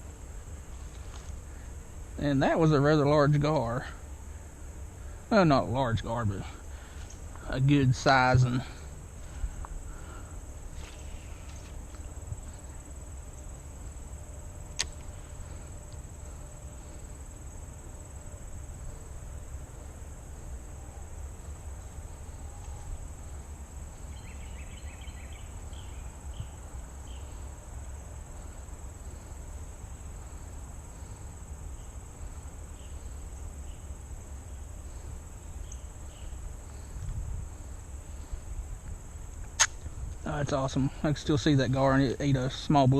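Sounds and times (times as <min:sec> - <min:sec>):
insects buzzing in high trill: 0:00.0 - 0:42.9
sharp click: 0:14.8 - 0:15.1, 0:39.4 - 0:39.9.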